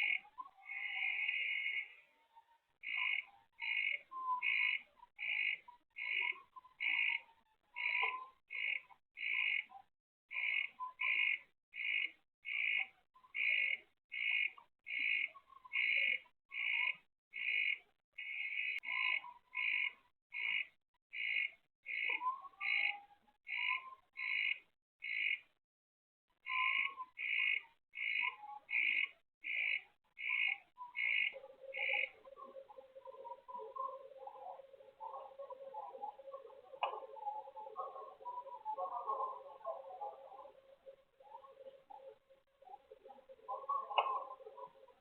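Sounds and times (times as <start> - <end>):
night animal calling: 0.0 - 25.5, 26.4 - 45.0
animal calls: 26.5 - 45.0.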